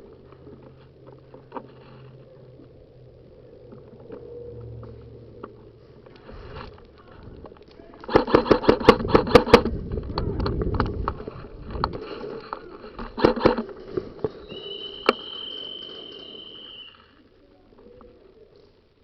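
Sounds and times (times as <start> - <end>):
low rumble: 0.0 - 7.7, 9.0 - 12.2
sharp clicks: 6.9 - 12.0.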